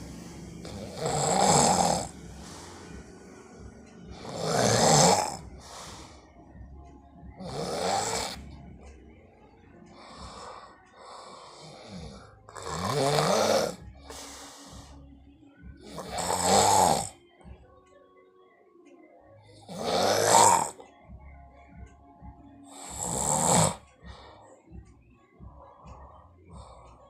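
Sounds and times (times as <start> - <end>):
man snoring: 0.0 - 6.2, 7.4 - 8.6, 10.0 - 14.9, 15.8 - 17.1, 19.6 - 20.8, 22.7 - 23.8.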